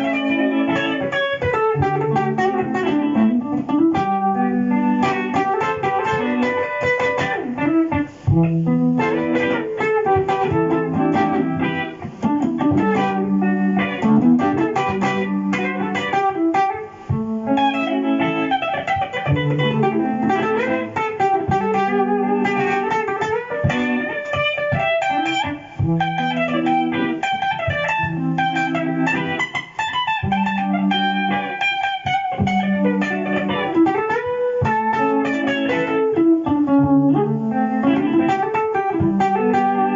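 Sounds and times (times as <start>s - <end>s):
electric guitar jazz melody: 0.0s - 39.9s
looped guitar chord pattern: 0.0s - 39.9s.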